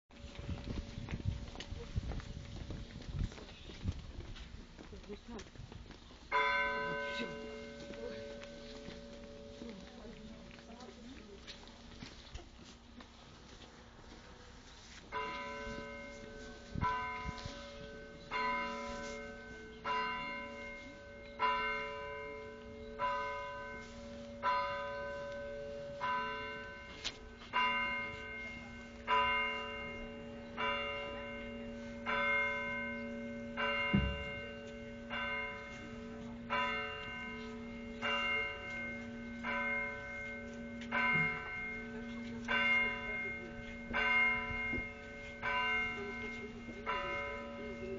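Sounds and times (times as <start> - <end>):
bells ringing: 6.3 - 11.2, 15.1 - 47.9.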